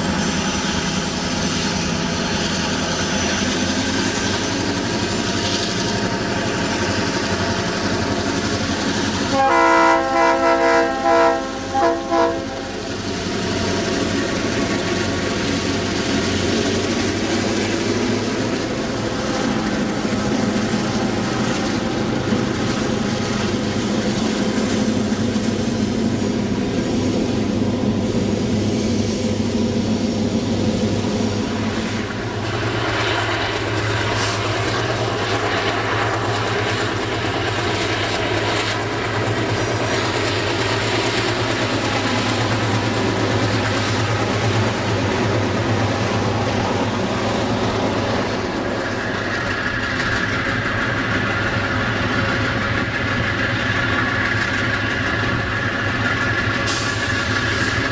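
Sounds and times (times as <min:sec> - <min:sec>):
locomotive engine working: 0:00.0 - 0:57.9
train rolling on rails: 0:00.0 - 0:57.9
locomotive air horn blasts: 0:09.3 - 0:13.0.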